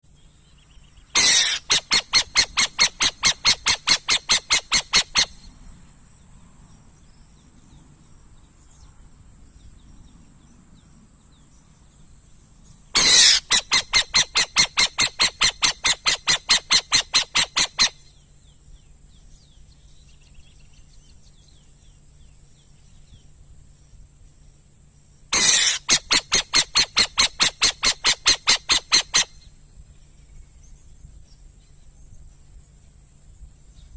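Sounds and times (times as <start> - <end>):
owl calling in rapid pulses: 1.1 - 5.6, 12.9 - 18.2, 25.3 - 29.6.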